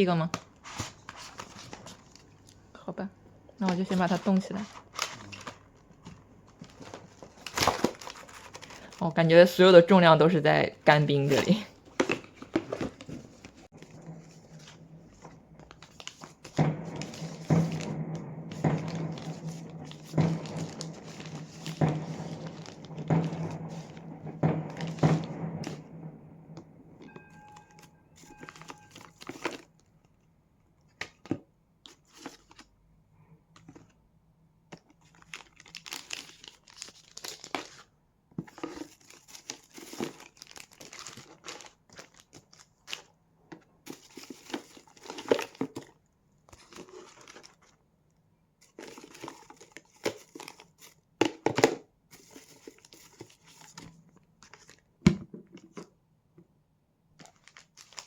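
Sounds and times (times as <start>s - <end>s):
packaging crinkling and tearing: 3.9s - 9.0s, 28.4s - 29.8s, 34.8s - 37.9s, 38.5s - 43.2s, 57.2s - 58.0s
sharp knocks: 16.4s - 29.0s.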